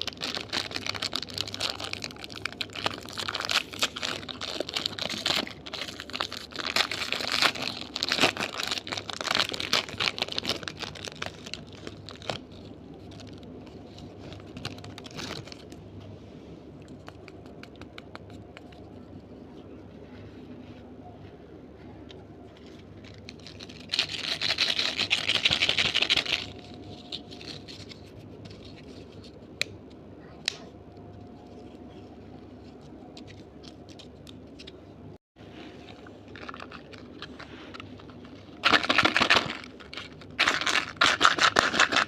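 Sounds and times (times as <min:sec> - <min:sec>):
candy wrapper crinkling: 0:00.0 - 0:15.8, 0:22.5 - 0:29.4, 0:35.8 - 0:42.0.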